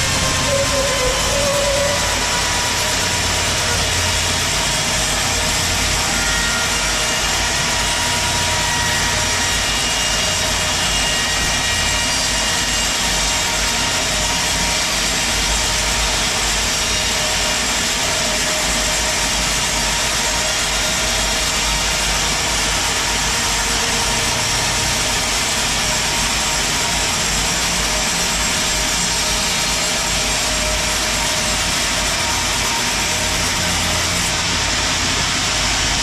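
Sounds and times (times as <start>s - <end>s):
low machine hum: 0.0s - 6.1s.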